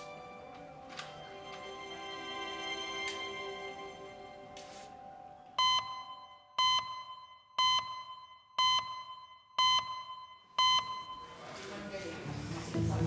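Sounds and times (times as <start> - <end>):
electronic alarm beeps: 5.6 - 11.4.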